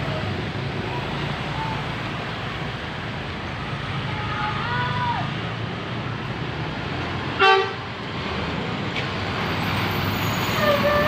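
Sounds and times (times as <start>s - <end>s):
road traffic: 0.0s - 11.0s
bus multi-note air horn: 7.4s - 7.8s, 10.6s - 11.0s.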